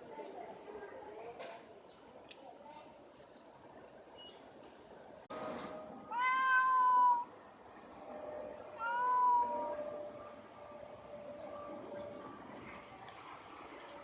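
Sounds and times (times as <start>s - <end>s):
cat meowing: 6.1s - 7.3s, 8.8s - 9.8s.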